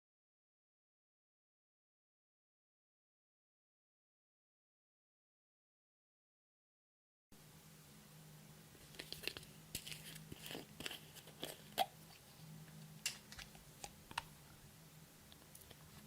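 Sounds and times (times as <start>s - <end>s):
faint steady hum: 7.3s - 16.0s.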